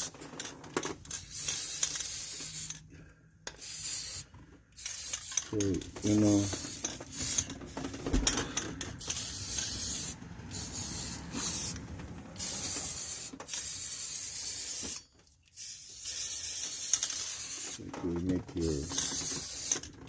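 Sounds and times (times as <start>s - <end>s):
aerosol spray can hissing: 3.6s - 4.2s, 9.1s - 11.8s, 12.4s - 15.0s, 15.6s - 17.8s.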